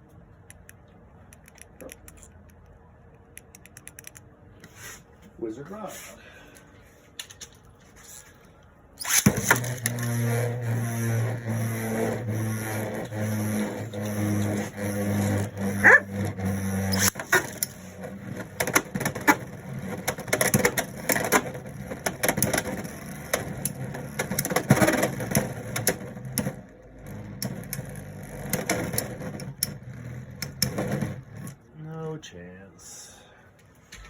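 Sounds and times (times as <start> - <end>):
spinning tops whirring and grinding: 9.0 - 31.6.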